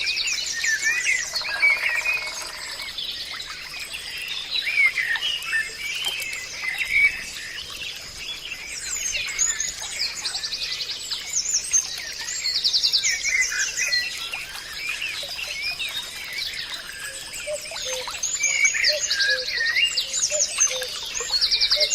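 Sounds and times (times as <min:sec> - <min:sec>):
wild birds singing and calling: 0:00.0 - 0:21.9
rapid bird trills: 0:01.2 - 0:03.0.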